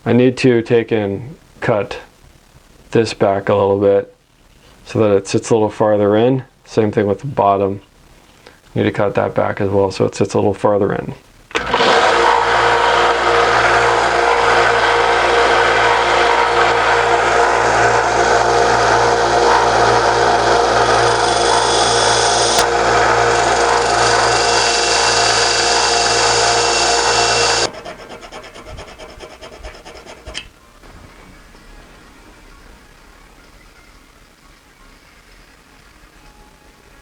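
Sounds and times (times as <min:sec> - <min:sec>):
power tool grinding metal: 0:11.6 - 0:30.4.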